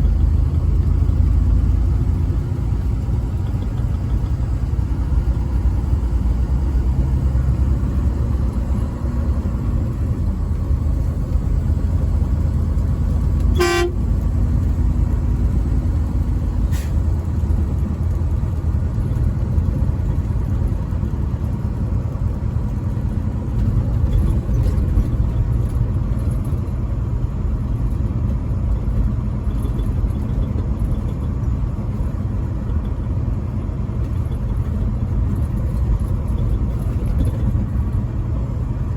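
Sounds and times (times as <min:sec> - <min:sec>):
truck engine and road noise: 0:00.0 - 0:38.9
short horn toot: 0:13.5 - 0:14.1.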